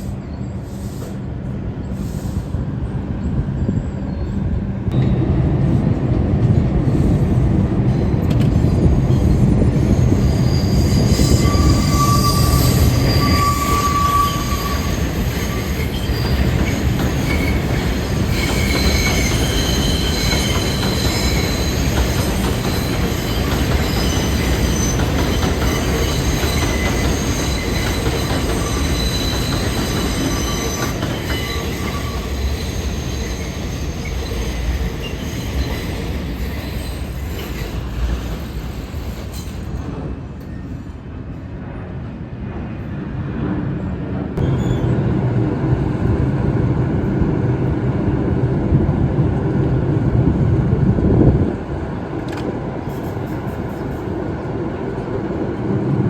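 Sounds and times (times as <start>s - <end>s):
subway train rumbling: 0.0s - 56.0s
steel wheels squealing: 8.0s - 40.9s, 44.4s - 45.0s.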